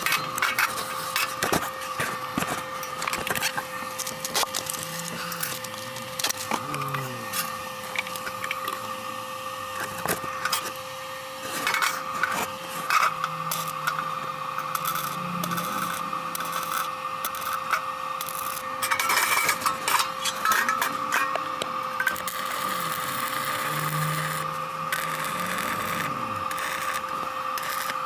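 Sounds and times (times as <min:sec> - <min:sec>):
metal scraping and clicking: 0:00.0 - 0:08.8, 0:11.5 - 0:21.4
electrical hum: 0:00.0 - 0:28.0.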